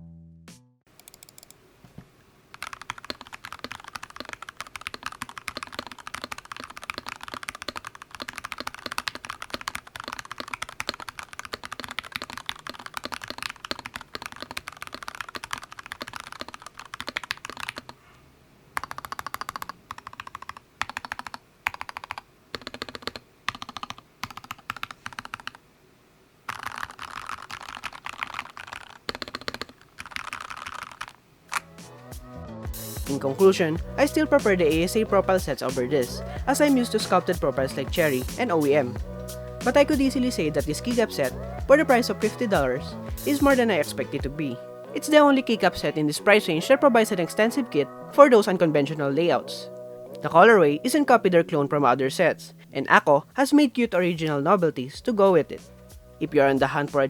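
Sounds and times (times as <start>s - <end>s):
typing on mechanical keyboard: 0.9s - 1.6s, 2.5s - 18.0s, 18.8s - 25.6s, 26.5s - 31.6s.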